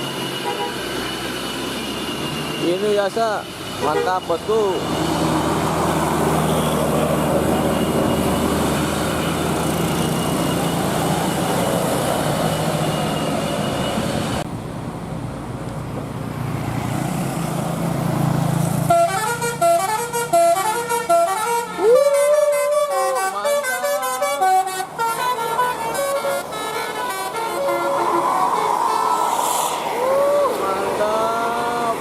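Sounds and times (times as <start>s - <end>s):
bus engine running: 0.0s - 32.0s
musical bus horn tune: 0.1s - 1.0s, 18.8s - 29.2s.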